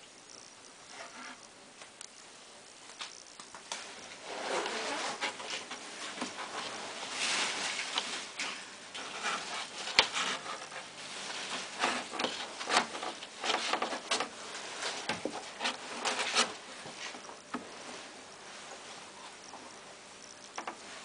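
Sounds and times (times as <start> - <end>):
scrubbing plastic drawer: 9.0 - 16.6.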